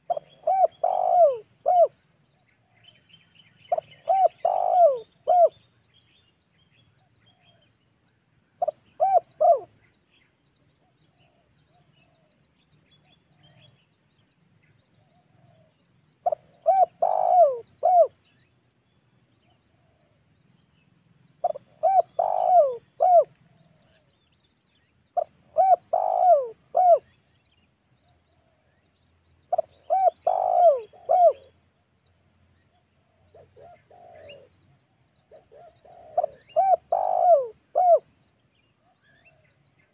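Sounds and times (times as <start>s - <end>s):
dove cooing: 0.0s - 2.0s, 3.7s - 5.6s, 8.6s - 9.8s, 15.1s - 18.2s, 21.4s - 24.1s, 25.2s - 27.1s, 29.5s - 31.6s, 33.0s - 38.2s.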